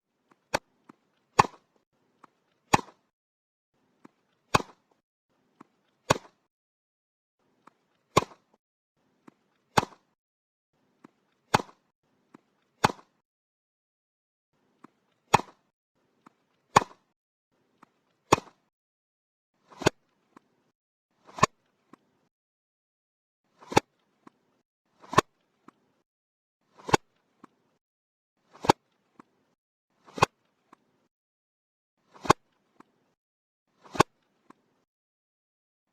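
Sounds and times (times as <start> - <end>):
racket hitting tennis ball: 1.4 - 1.7, 2.7 - 3.1, 4.5 - 4.9, 6.0 - 6.5, 8.1 - 8.6, 9.7 - 10.2, 11.5 - 11.8, 12.8 - 13.2, 15.3 - 15.7, 18.3 - 18.6, 30.1 - 30.3.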